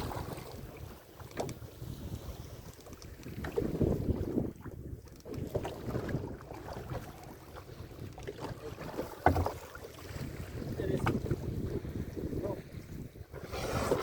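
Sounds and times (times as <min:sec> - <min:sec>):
small boat noise: 0:00.0 - 0:14.0
wind buffeting microphone: 0:00.0 - 0:14.0.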